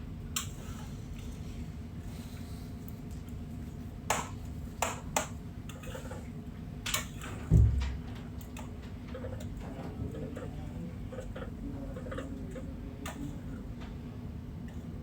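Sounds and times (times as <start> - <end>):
low thump: 7.5 - 8.0.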